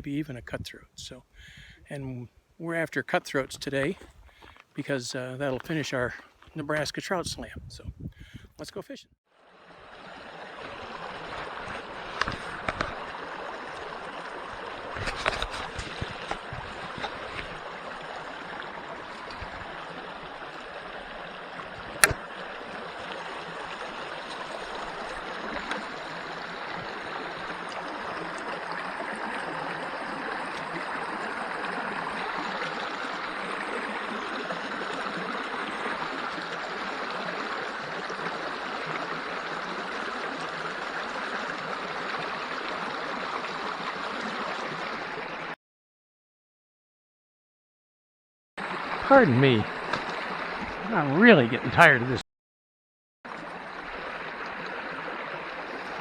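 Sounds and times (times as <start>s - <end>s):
creek babbling over riffles: 8.4s - 45.5s, 48.6s - 52.2s, 53.3s - 56.0s
sharp clicks or knocks: 22.0s - 22.2s.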